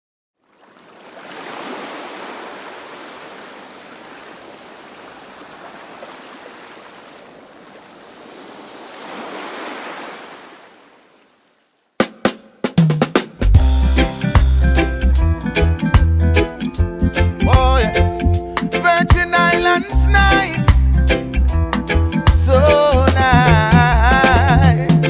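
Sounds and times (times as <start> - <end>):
ocean surf washing in: 0.9 - 10.9
music: 12.0 - 25.0.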